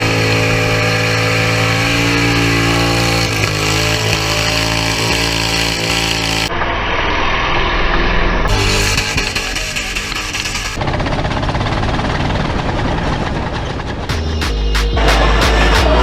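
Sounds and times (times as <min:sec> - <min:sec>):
car engine at high revs: 0:00.0 - 0:06.5
rough rattling engine: 0:00.0 - 0:06.5, 0:08.5 - 0:16.0.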